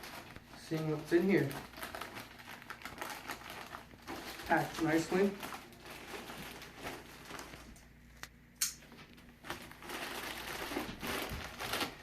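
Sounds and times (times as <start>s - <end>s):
packaging rustling and crinkling: 0.0s - 8.0s, 8.9s - 12.0s.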